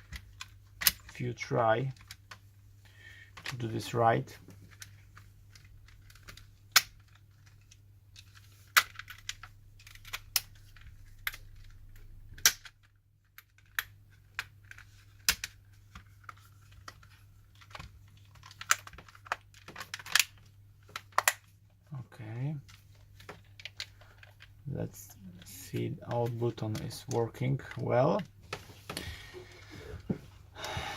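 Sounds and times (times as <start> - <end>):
plastic clicks and snaps: 5.5 - 15.6, 16.9 - 21.5.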